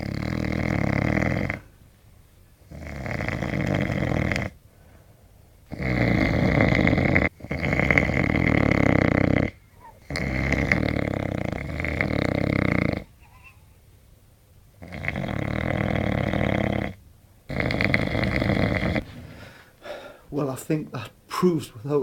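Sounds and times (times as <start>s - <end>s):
man snoring loudly: 0.0s - 1.7s, 2.7s - 4.6s, 5.7s - 13.1s, 14.8s - 19.1s.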